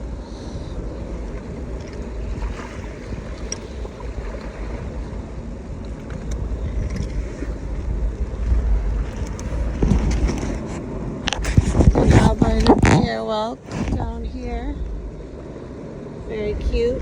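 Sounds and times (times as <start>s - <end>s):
surf washing: 0.0s - 17.0s
wind buffeting microphone: 0.0s - 17.0s.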